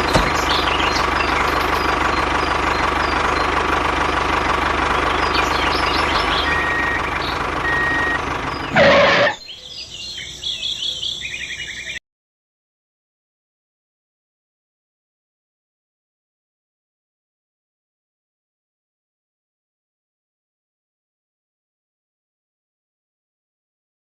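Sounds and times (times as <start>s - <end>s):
birds chirping: 0.0s - 12.0s
small motor whining: 6.4s - 9.4s
short beeps: 6.5s - 9.4s
loud burst of noise: 8.7s - 9.4s.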